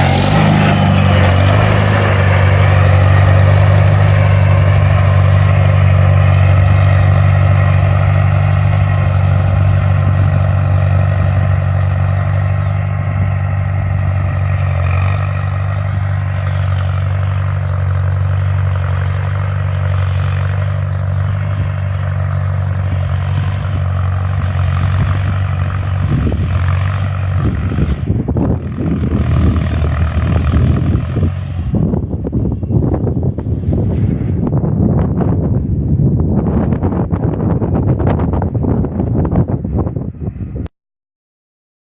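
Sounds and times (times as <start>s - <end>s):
tractor engine running: 0.0s - 40.7s
wind buffeting microphone: 21.0s - 40.7s.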